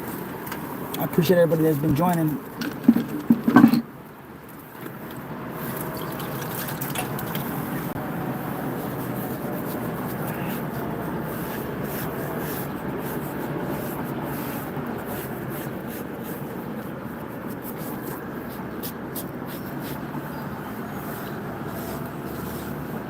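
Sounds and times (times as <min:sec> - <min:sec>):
scratchy scrubbing on masonry: 0:05.5 - 0:23.0.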